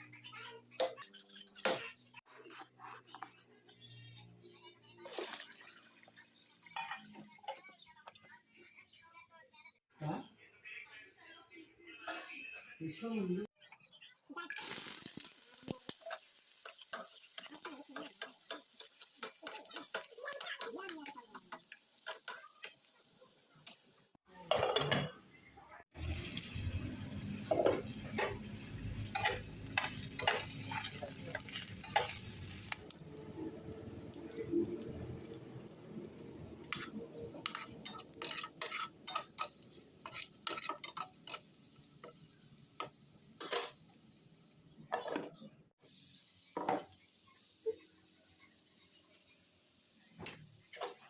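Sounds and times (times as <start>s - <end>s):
food sizzling: 4.2s - 8.4s, 14.3s - 24.8s, 25.4s - 51.0s
spoon clinking against a pan: 16.1s - 22.8s, 29.1s - 32.4s, 36.7s - 42.2s.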